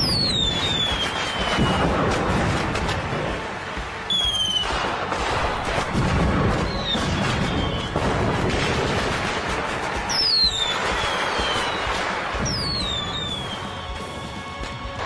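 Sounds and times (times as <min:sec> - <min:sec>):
fireworks whistles sliding down: 0:00.0 - 0:01.9, 0:10.1 - 0:14.7
fireworks crackling and banging: 0:00.0 - 0:15.0
music: 0:00.0 - 0:15.0.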